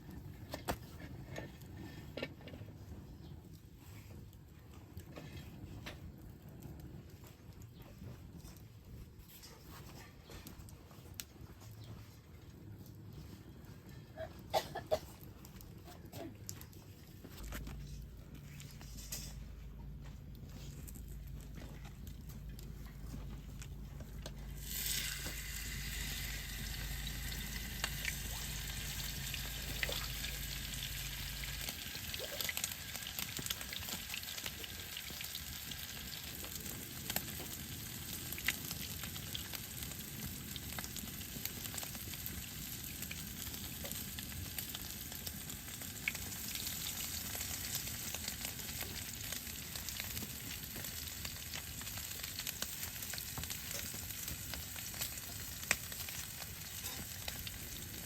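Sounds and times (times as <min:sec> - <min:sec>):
wood fire sizzling and popping: 0:00.0 - 0:58.0
low hum: 0:17.4 - 0:34.4.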